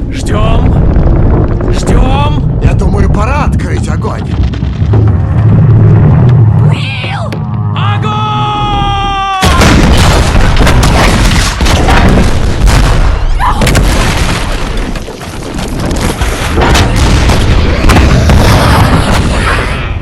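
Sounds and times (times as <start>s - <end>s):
cannons booming: 0.0s - 6.8s, 9.4s - 20.0s
person shouting: 6.8s - 9.6s.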